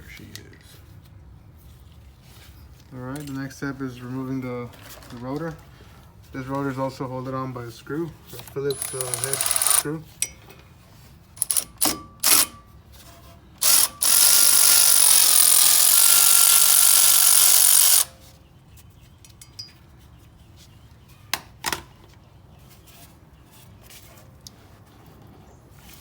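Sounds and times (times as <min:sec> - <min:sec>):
power drill running: 0:08.7 - 0:09.8, 0:11.4 - 0:12.5, 0:13.6 - 0:18.1.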